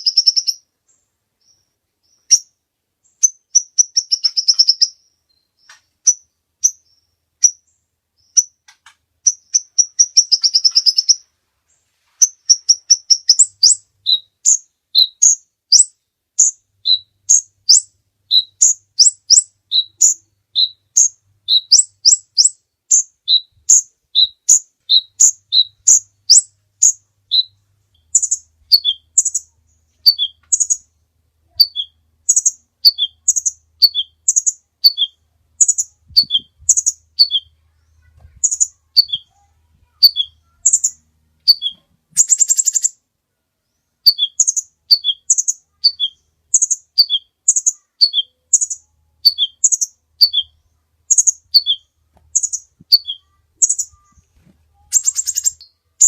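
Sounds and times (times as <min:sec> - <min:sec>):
buzzy bird trill: 0:00.0 - 0:00.6, 0:03.1 - 0:08.6, 0:09.2 - 0:11.3, 0:12.2 - 0:43.0, 0:44.0 - 0:56.0
bird chirping high notes: 0:38.4 - 0:42.9, 0:44.1 - 0:54.2, 0:54.8 - 0:55.8.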